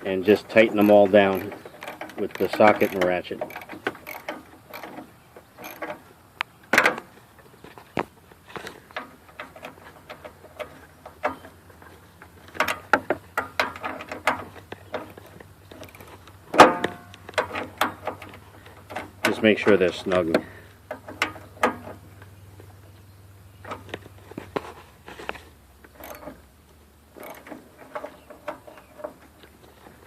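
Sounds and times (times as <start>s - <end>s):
metallic clicks and knocks: 0.0s - 23.0s, 23.6s - 30.0s
loud ringing metal clank: 16.5s - 17.2s.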